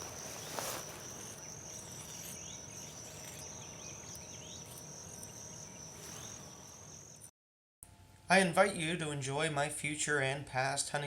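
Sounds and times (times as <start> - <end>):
faint short insect chirps: 0.0 - 7.3
insects trilling: 0.0 - 7.3.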